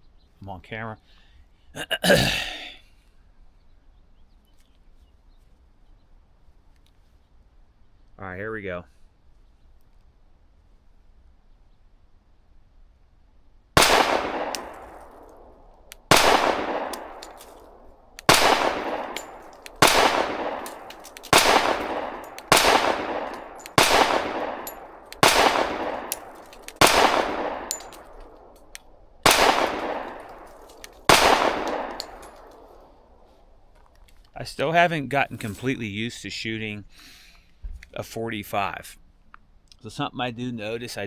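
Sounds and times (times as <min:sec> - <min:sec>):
pistol shots with ringing echo: 0:13.8 - 0:33.0.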